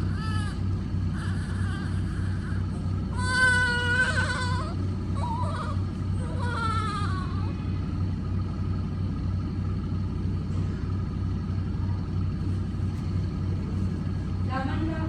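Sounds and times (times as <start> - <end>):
baby crying: 0.0 - 7.6
low electric hum: 0.0 - 15.0.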